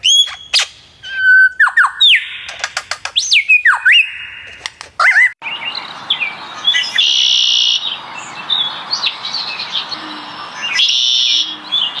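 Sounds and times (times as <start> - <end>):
bird chirps and whistles: 0.0 - 2.6, 3.2 - 7.9
harsh bird trills: 0.0 - 12.0.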